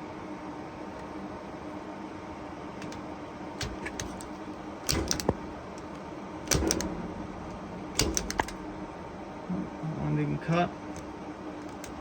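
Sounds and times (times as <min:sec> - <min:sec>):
rattle of small clicks: 0:03.6 - 0:07.0, 0:08.0 - 0:08.7
punch-down tool snapping: 0:03.6 - 0:08.7.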